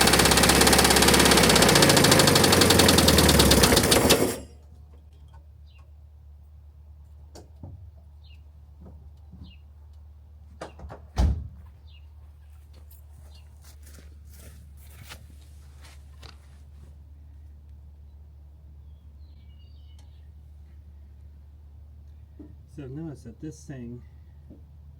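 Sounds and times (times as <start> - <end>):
engine running rough: 0.0 - 5.4
thump: 11.2 - 11.6.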